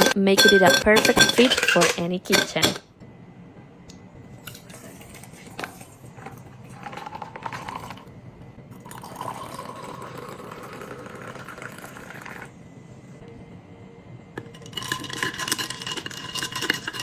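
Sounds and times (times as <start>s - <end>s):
liquid being poured: 8.8s - 12.5s.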